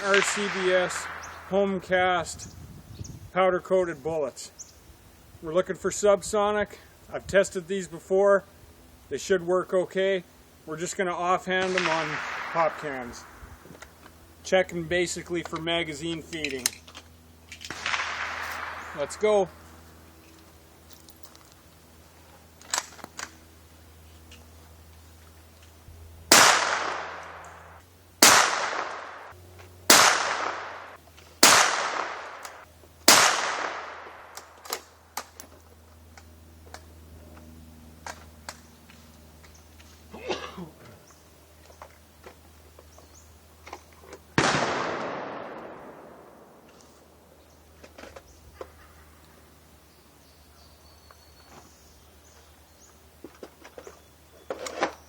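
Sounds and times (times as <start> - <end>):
rifle shots with echo: 0.0 - 1.9, 11.5 - 13.6, 17.7 - 19.6, 26.3 - 34.9, 44.4 - 47.2.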